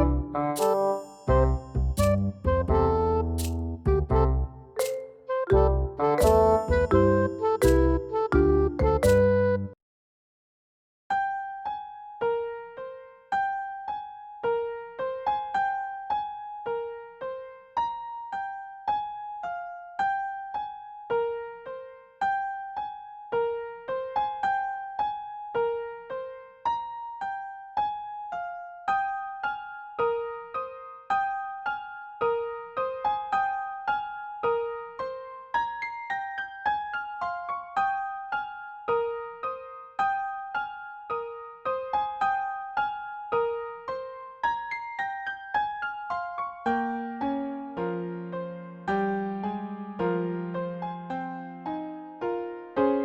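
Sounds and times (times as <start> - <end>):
gentle keyboard melody: 0.0 - 9.8, 24.4 - 53.0.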